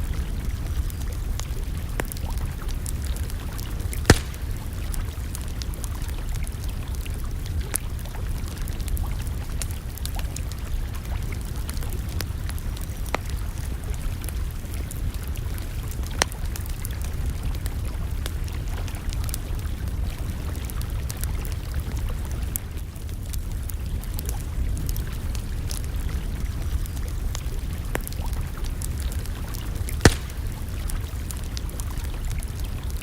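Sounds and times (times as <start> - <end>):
campfire crackling: 0.0 - 18.6, 20.6 - 33.0
fire pop: 3.9 - 5.1, 29.9 - 31.2.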